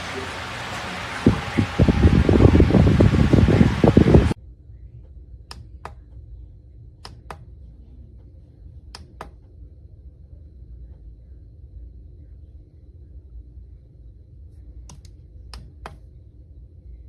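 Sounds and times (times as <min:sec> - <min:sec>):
faint low hum: 0:00.0 - 0:04.4.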